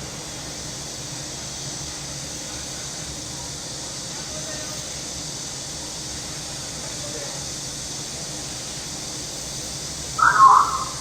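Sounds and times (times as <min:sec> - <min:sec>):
cicadas buzzing: 0:00.0 - 0:11.0.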